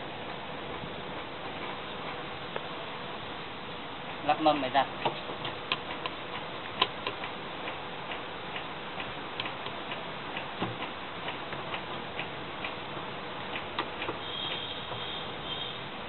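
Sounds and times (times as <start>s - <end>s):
light clicks and taps of parts: 5.0s - 12.8s.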